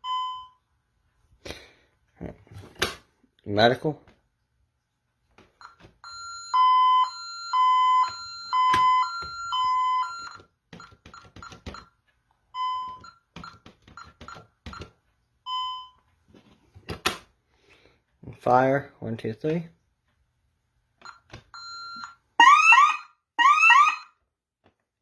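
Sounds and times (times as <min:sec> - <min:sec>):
alarm keypad two-tone beeping: 0:05.6 - 0:11.9, 0:12.6 - 0:14.9, 0:21.0 - 0:24.1
short keypad beeps: 0:05.6 - 0:11.9, 0:12.6 - 0:14.9
keypad clicks: 0:10.7 - 0:11.9.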